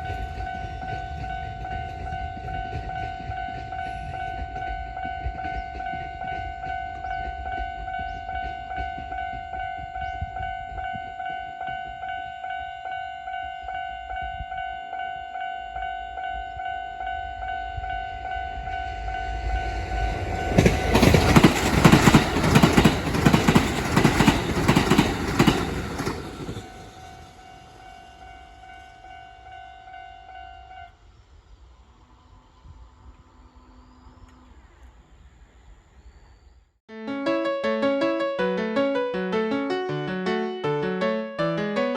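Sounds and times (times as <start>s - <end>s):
train passing: 0.0s - 36.4s
train wheels clacking: 19.0s - 27.8s.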